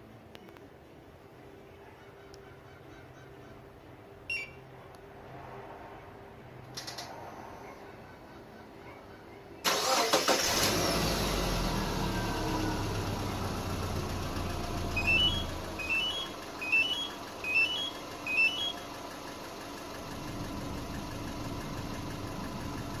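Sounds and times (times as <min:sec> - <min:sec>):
short electronic chirping beeps: 0:04.3 - 0:04.6, 0:15.0 - 0:18.8
car engine idling: 0:09.7 - 0:23.0.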